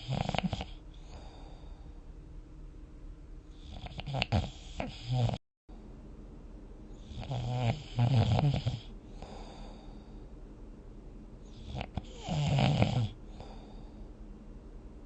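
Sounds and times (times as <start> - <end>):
person snoring: 0.0 - 1.8, 3.6 - 5.4, 7.0 - 10.2, 11.5 - 14.0
soft breath: 0.7 - 2.1, 8.8 - 10.4, 13.1 - 14.3.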